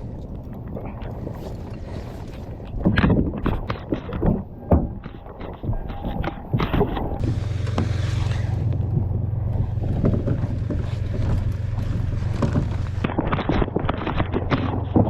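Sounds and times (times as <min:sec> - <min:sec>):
wind on microphone: 0:00.0 - 0:15.0
knocks and clatter: 0:02.8 - 0:15.0
motor running steadily: 0:07.1 - 0:14.9.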